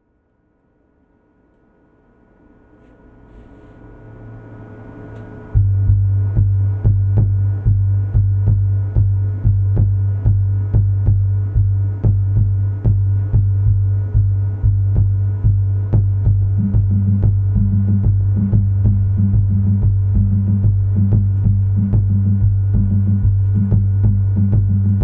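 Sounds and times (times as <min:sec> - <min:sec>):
low synth drone: 0:04.1 - 0:25.0
heavy bass line: 0:05.5 - 0:25.0
drum machine beat: 0:05.6 - 0:25.0.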